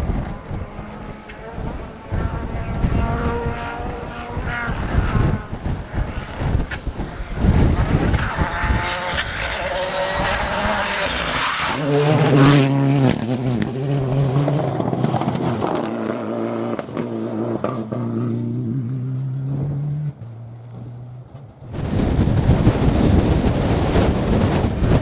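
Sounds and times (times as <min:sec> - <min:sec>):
wind buffeting microphone: 0:00.0 - 0:15.9, 0:21.6 - 0:25.0
rally car engine revving: 0:00.0 - 0:25.0.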